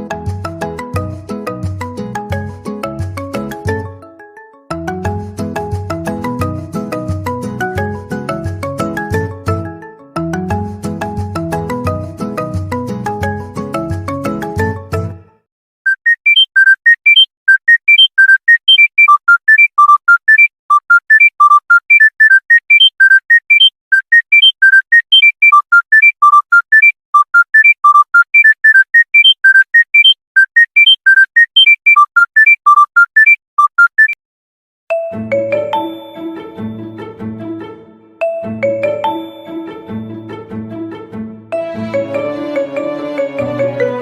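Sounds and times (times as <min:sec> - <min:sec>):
phone ringtone beeps: 0:15.9 - 0:34.2, 0:34.9 - 0:36.4, 0:38.2 - 0:39.7.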